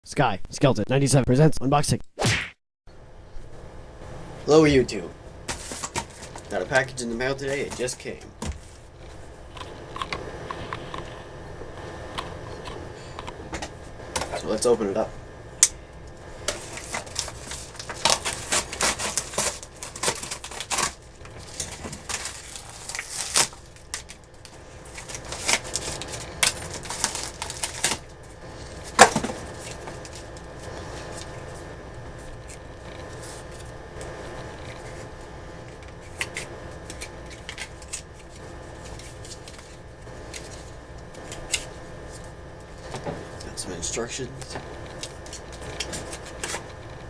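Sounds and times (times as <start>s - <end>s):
sharp snap: 2.2s - 2.6s
steady low hum: 2.9s - 47.0s
packaging rustling and tearing: 5.5s - 6.6s, 16.5s - 31.6s, 34.4s - 42.9s, 44.8s - 46.8s.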